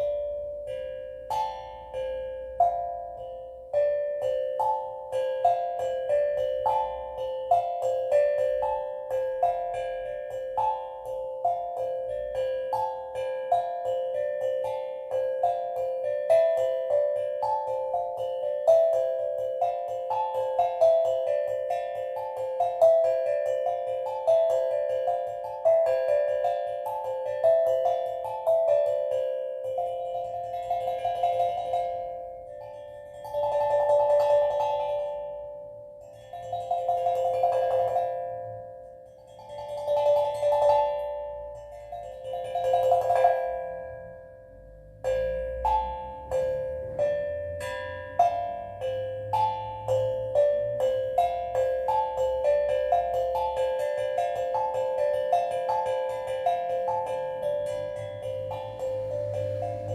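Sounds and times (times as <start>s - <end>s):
steel drum notes: 0.0s - 59.9s.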